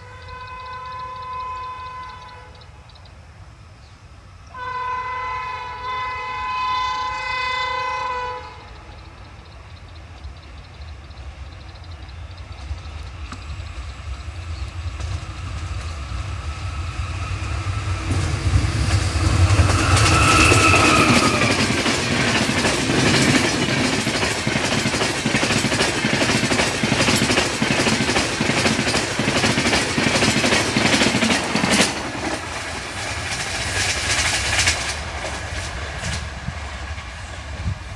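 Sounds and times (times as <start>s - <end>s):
low locomotive rumble: 0.0s - 37.9s
train wheels clattering over rails: 8.8s - 37.9s.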